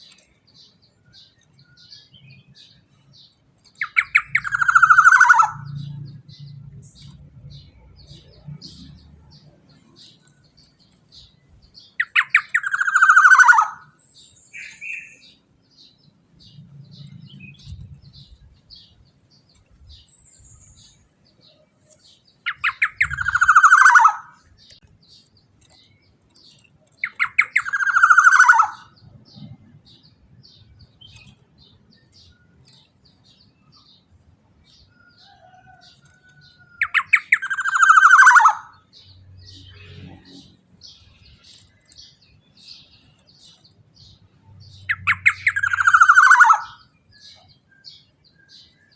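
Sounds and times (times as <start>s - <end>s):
faint high bird chirps: 0.0s - 34.2s, 34.8s - 48.9s
bird harsh falling calls: 3.8s - 6.5s, 11.8s - 15.4s, 22.0s - 24.8s, 27.0s - 29.0s, 44.7s - 47.4s.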